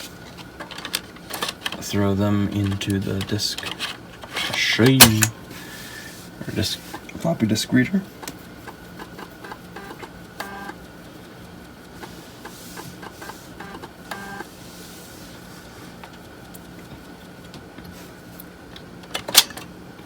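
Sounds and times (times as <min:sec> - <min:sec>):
floppy drive motor humming: 0:00.0 - 0:19.1
drive head clicks: 0:00.4 - 0:05.4.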